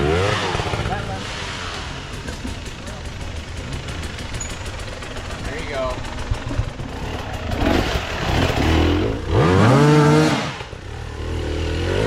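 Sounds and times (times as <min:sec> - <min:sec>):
dirt bike engine revving: 0:00.0 - 0:12.0.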